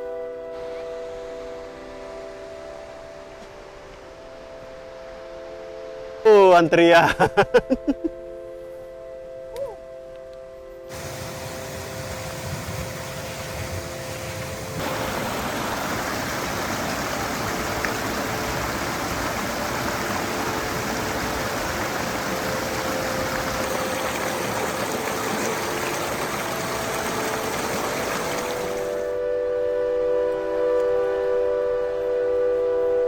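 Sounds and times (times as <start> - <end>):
stream water rushing: 10.9 - 29.2.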